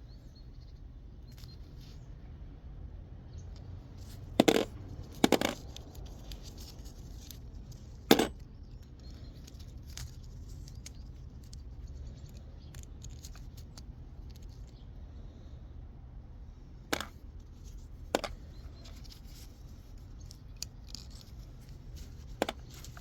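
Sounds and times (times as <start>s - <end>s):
hard parts clattering on surface: 4.4s - 5.6s, 8.0s - 8.4s, 16.9s - 17.2s, 18.1s - 19.3s, 20.2s - 23.0s.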